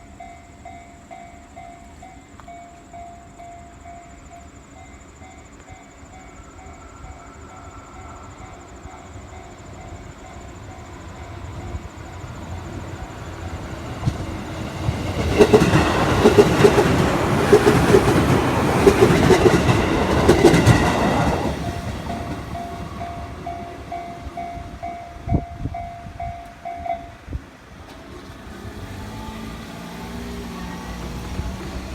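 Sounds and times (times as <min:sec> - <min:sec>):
crossing warning bell ringing: 0:00.0 - 0:13.7, 0:15.0 - 0:27.7
train wheels clicking over rail joints: 0:10.7 - 0:24.8.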